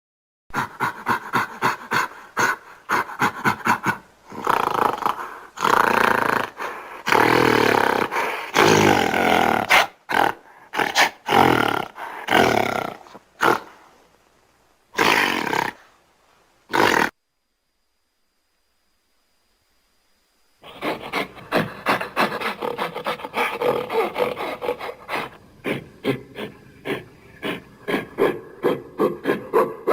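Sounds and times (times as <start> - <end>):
gorilla grunting: 0.5 - 13.8, 15.0 - 15.8, 16.7 - 17.1, 20.6 - 29.9
gorilla roaring: 0.5 - 13.8, 15.0 - 15.8, 16.7 - 17.2, 20.6 - 29.9.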